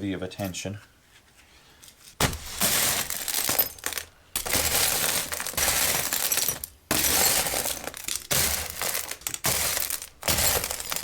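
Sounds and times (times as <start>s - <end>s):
metal scrap rattling and clinking: 2.3s - 11.0s.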